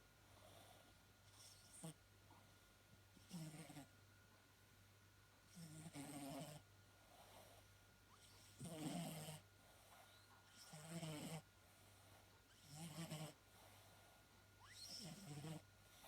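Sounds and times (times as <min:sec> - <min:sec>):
cat snoring: 0:03.2 - 0:03.9, 0:05.5 - 0:11.4, 0:12.0 - 0:16.0.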